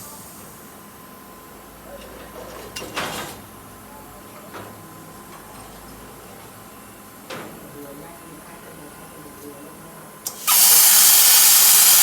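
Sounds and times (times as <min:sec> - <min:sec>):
plasma cutter hissing bursts: 0:10.3 - 0:12.0.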